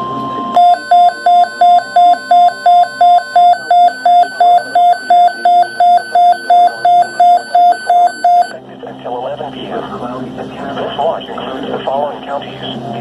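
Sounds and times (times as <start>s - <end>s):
buzzy alarm beeps: 0.0s - 8.6s.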